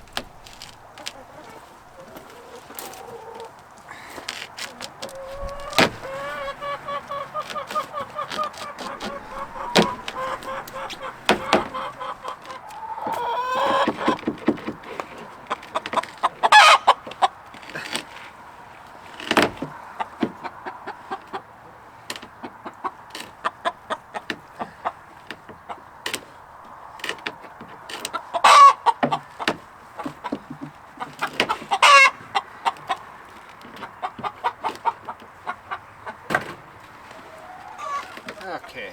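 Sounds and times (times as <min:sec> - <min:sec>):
sharp knocks and clattering: 0:00.0 - 0:03.0, 0:04.1 - 0:12.6, 0:13.7 - 0:16.4, 0:29.0 - 0:35.3
chickens clucking: 0:00.0 - 0:38.9.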